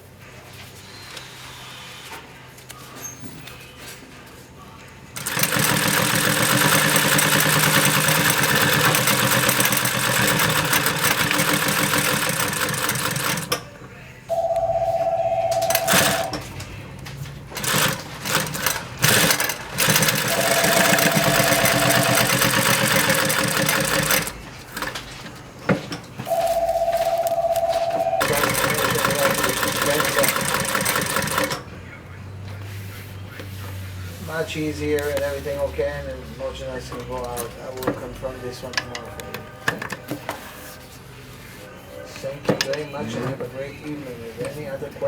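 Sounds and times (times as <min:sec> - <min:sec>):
sewing machine stitching: 0:05.2 - 0:13.6, 0:15.6 - 0:16.5, 0:17.5 - 0:25.0, 0:28.1 - 0:31.6
steady tone: 0:14.3 - 0:16.6, 0:26.3 - 0:28.4.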